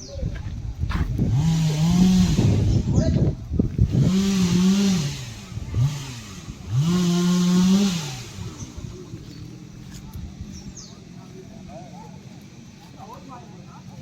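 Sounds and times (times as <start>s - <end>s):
small engine revving: 0.9s - 9.6s.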